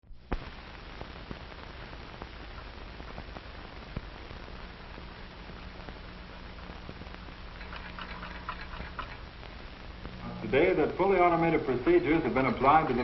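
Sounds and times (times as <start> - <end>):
film soundtrack hiss: 0.0 - 13.0.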